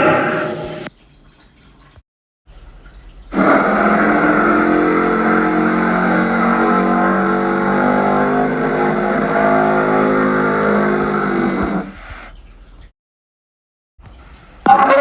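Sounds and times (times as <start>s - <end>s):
deep dinosaur call: 3.4s - 11.9s, 14.7s - 15.0s.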